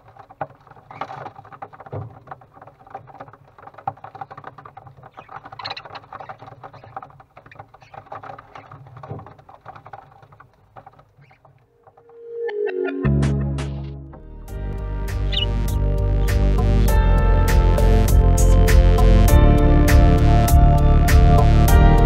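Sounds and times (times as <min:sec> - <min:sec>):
chicks scratching and rustling: 0:00.0 - 0:12.1, 0:15.2 - 0:16.3.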